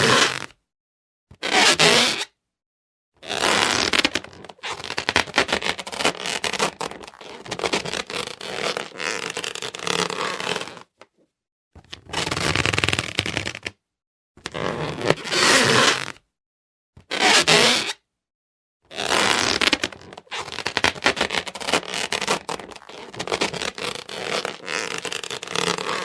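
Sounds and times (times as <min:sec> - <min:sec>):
rubber balloon squeaking: 0:01.4 - 0:02.3, 0:03.2 - 0:10.9, 0:12.1 - 0:13.7, 0:14.5 - 0:16.2, 0:17.1 - 0:18.0, 0:18.9 - 0:26.0.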